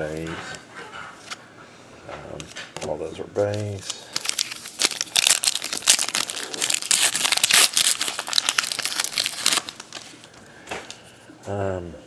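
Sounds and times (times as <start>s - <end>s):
wrapper crinkling and tearing: 3.8s - 10.3s.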